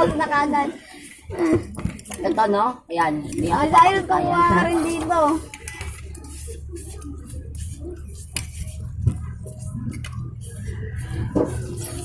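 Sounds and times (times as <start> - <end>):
low steady hum: 3.2 - 12.0
utensils clicking on a dish: 4.5 - 12.0.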